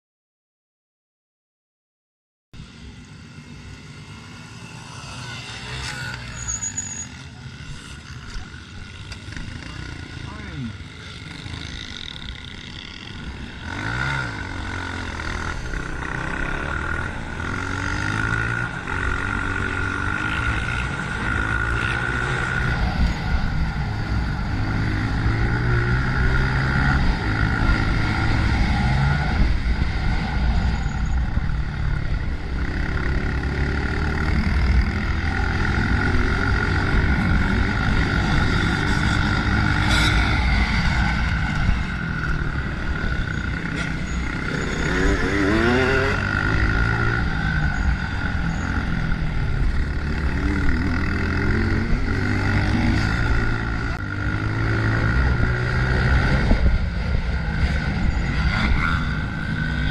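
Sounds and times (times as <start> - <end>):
dirt bike engine revving: 3.8 - 59.9.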